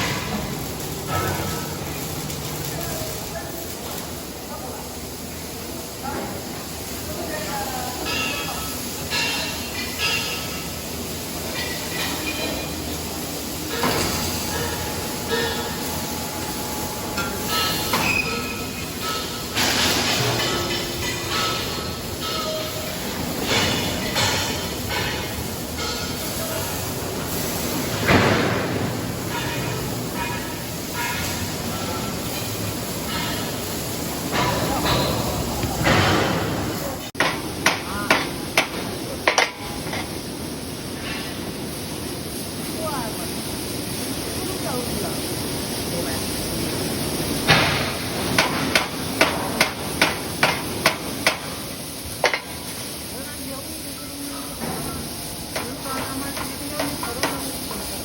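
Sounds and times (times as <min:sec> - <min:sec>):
conveyor machinery rumbling clatter: 0:00.0 - 0:58.0
steady background noise: 0:00.0 - 0:58.0
loud machine clunk: 0:13.7 - 0:26.4, 0:27.2 - 0:40.0, 0:47.4 - 0:51.6.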